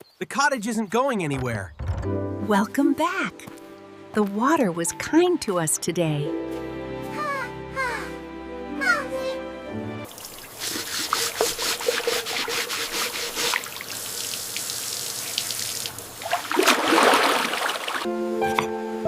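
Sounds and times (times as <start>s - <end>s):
rush of water: 10.1s - 18.1s
rubbing: 10.6s - 13.7s.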